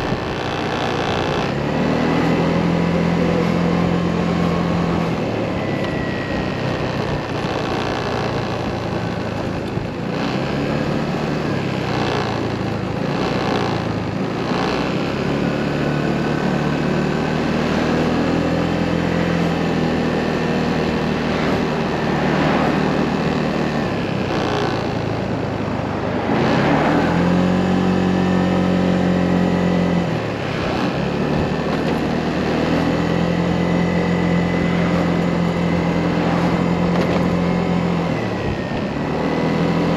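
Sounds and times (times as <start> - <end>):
motorcycle engine revving: 0.0 - 39.9
wind and road noise: 0.0 - 39.9.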